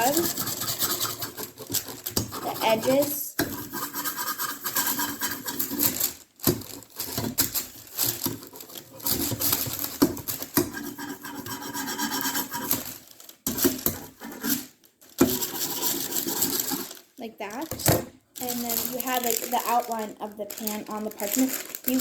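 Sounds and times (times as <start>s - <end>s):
scissors scraping on parchment paper: 0.0s - 17.0s.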